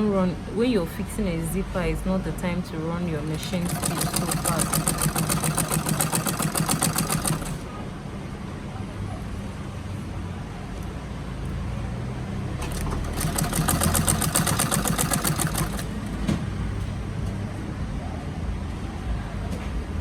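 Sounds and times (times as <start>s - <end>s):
sewing machine stitching: 3.2s - 7.6s, 12.6s - 16.2s.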